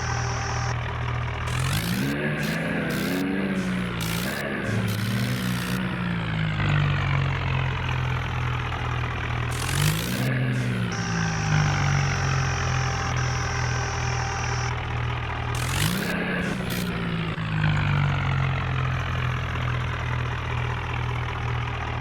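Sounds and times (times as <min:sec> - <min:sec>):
thin high tone: 0:00.0 - 0:00.8, 0:09.5 - 0:14.7
vehicle engine running: 0:00.0 - 0:22.0.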